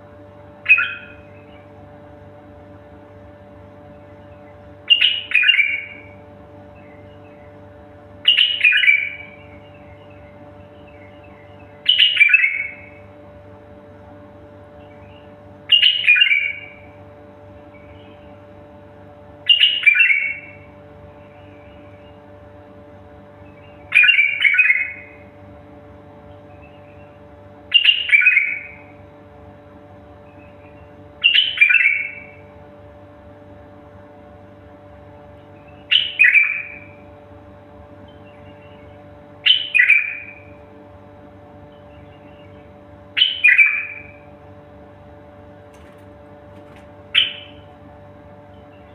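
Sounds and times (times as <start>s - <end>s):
steady low hum: 0.0s - 48.9s
songbird descending phrase: 0.6s - 1.8s, 3.7s - 13.2s, 14.6s - 18.8s, 19.4s - 22.4s, 23.0s - 25.3s, 26.2s - 29.2s, 30.2s - 32.5s, 35.2s - 45.6s, 47.0s - 48.9s.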